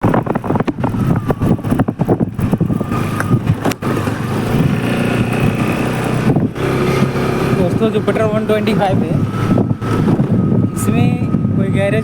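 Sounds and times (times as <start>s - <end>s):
scooter engine running: 0.0s - 10.8s
scooter suspension knocking clunks: 2.7s - 4.6s.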